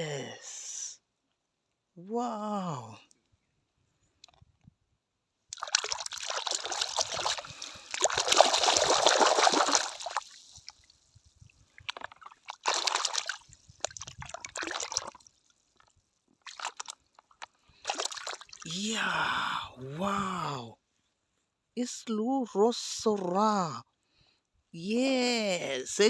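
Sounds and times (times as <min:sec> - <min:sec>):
water pouring over plastic toys: 0:05.6 - 0:10.8.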